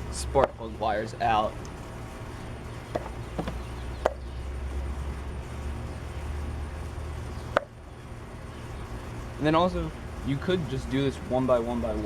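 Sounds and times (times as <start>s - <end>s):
low background rumble: 0.0s - 12.0s.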